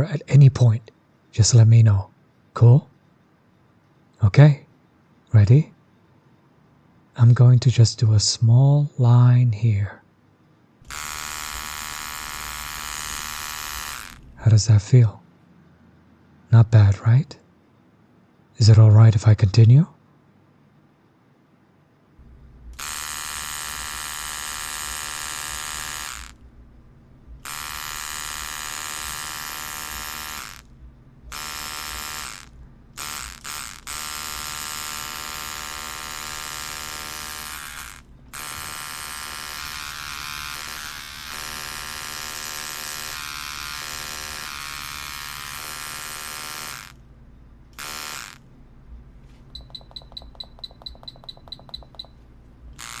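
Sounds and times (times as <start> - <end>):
tattoo machine buzzing: 10.8 - 14.3, 22.7 - 26.4, 27.4 - 47.1, 47.7 - 48.4, 49.5 - 53.0.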